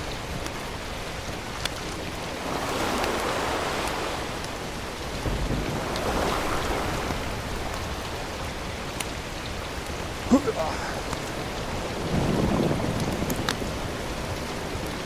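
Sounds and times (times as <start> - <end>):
waves washing against rocks: 2.4 - 8.3
wind rumbling on microphone: 11.0 - 15.0.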